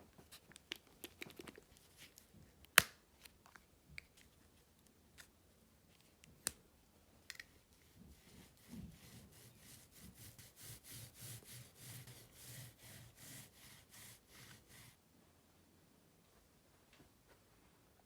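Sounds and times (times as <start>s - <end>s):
faint brushing strokes: 7.6s - 15.0s.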